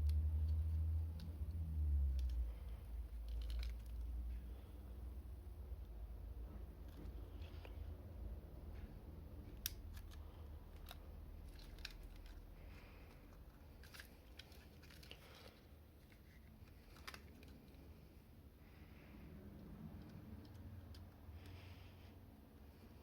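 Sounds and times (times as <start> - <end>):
light plastic clicks: 0.0 - 4.5, 9.5 - 17.8
rustling of plastic packaging: 10.0 - 18.0.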